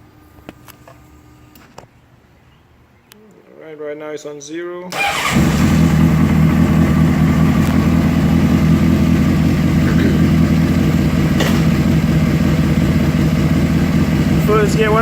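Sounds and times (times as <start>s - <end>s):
motorcycle engine idling: 5.0s - 15.0s.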